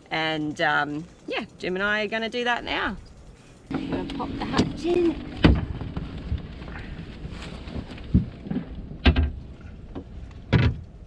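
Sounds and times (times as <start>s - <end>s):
wind noise on microphone: 2.6s - 11.0s.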